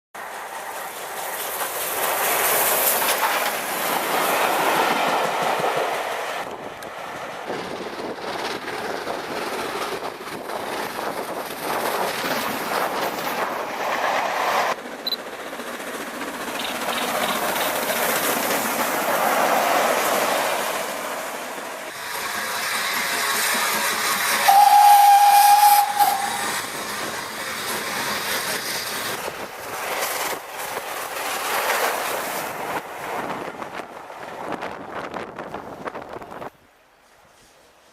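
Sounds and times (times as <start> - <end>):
steam train hissing: 16.4 - 32.5
steam whistle blast: 24.4 - 26.4.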